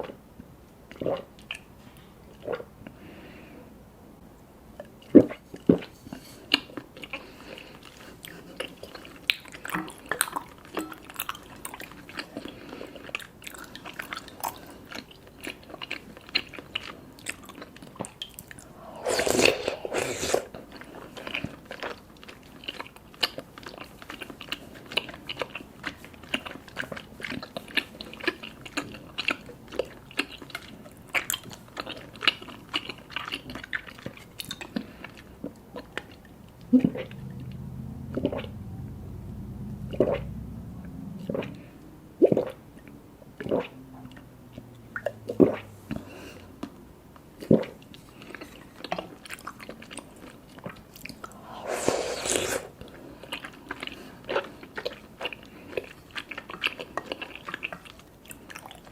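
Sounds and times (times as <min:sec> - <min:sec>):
person chewing wetly: 0:00.9 - 0:03.0, 0:04.8 - 0:38.7, 0:41.2 - 0:58.9
slurping through a straw: 0:18.4 - 0:21.9, 0:51.0 - 0:54.6.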